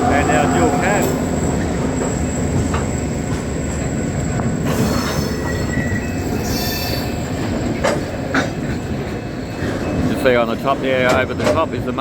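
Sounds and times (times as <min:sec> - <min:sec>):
high-pitched wheel squeal: 0:00.0 - 0:03.0
train wagons rumbling: 0:00.0 - 0:12.0
wheels clicking over rail joints: 0:07.4 - 0:12.0.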